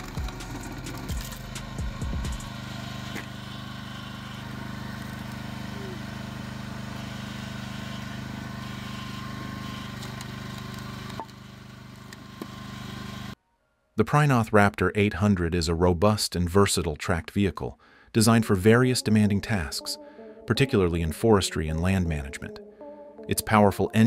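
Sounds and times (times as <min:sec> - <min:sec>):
heavy machine engine running: 0:00.0 - 0:13.4.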